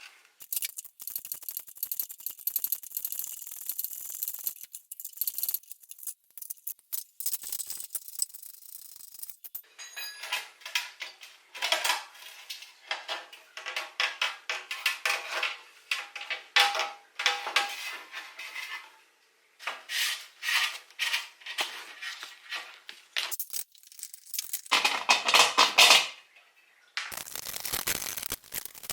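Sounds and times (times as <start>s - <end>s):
metal parts clinking: 0.4s - 12.0s, 23.3s - 26.0s.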